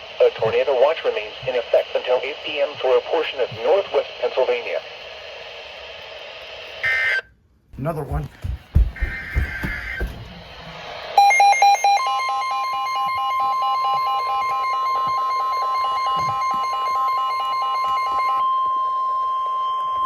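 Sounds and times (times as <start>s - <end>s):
steady warning alarm tone: 6.8s - 7.3s, 8.8s - 20.0s.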